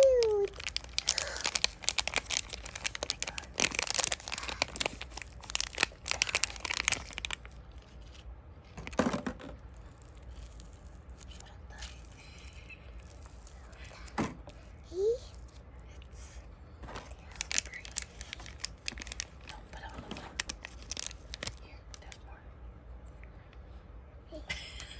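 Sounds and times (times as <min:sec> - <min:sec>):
plastic packaging tearing and crinkling: 0:00.0 - 0:14.2, 0:16.8 - 0:22.2.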